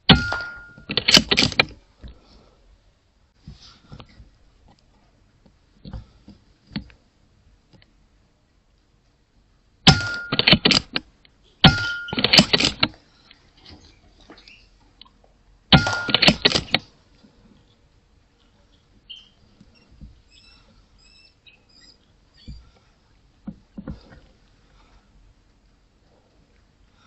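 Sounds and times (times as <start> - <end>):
air rifle clicks and clatter: 0.1 - 1.8, 9.9 - 13.0, 15.7 - 16.9.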